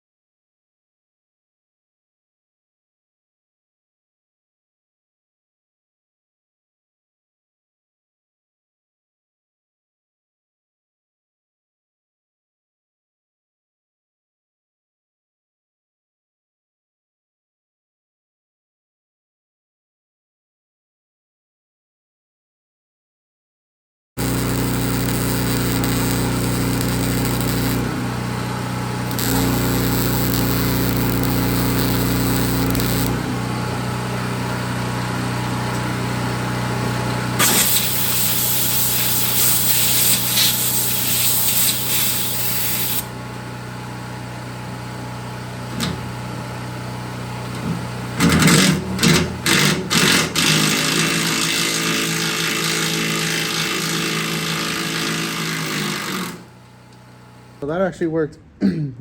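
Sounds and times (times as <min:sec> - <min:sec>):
harsh hissing: 0:24.2 - 0:27.9, 0:29.1 - 0:33.2, 0:37.4 - 0:43.0
impact wrench bursts: 0:24.2 - 0:28.3, 0:28.9 - 0:33.4, 0:37.4 - 0:43.1
power tool motor whine: 0:24.2 - 0:44.4, 0:48.0 - 0:56.7.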